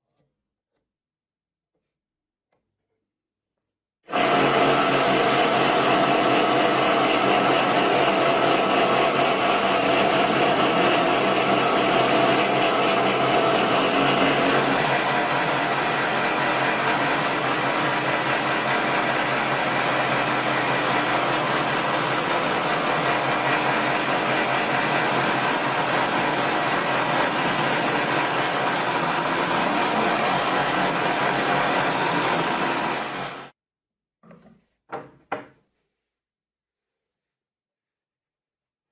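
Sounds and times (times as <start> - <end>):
chainsaw engine at high revs: 4.1 - 33.5.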